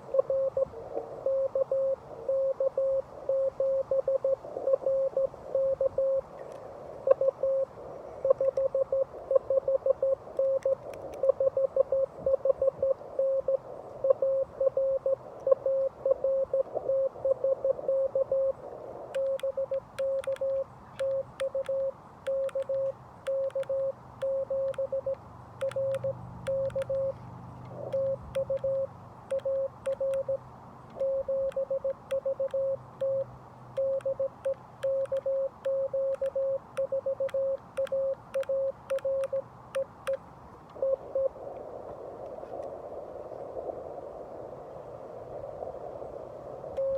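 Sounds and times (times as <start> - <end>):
radio band hiss: 0.0 - 30.4, 40.0 - 46.9
morse code tone: 0.1 - 6.3, 7.1 - 18.6, 19.2 - 27.2, 27.8 - 30.4, 31.0 - 40.0, 40.8 - 41.4
paddle key clicks: 19.2 - 30.3, 30.9 - 40.2.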